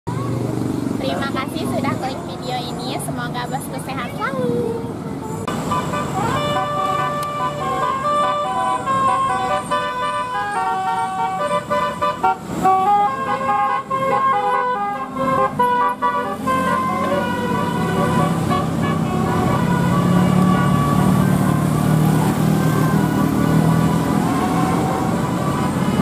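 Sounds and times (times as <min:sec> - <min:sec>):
air horns playing melody: 0:05.5 - 0:26.0.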